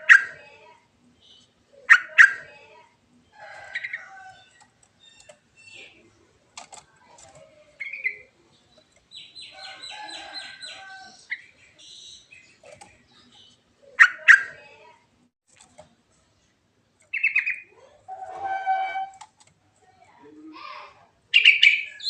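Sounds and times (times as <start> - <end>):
bird singing varied calls: 17.1 - 17.7.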